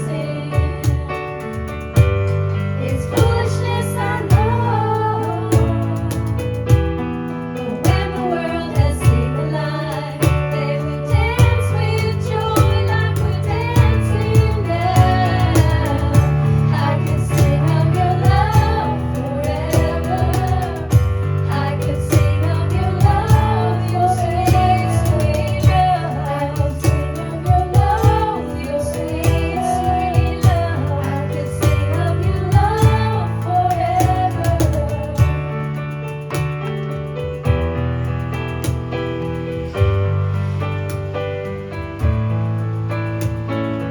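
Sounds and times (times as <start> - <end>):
woman singing: 0.0 - 2.1, 2.8 - 7.0, 7.6 - 35.6.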